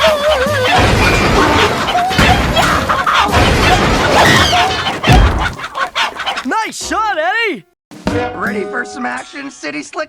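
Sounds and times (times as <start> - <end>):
cartoon crashes and whacks: 0.7 - 5.6.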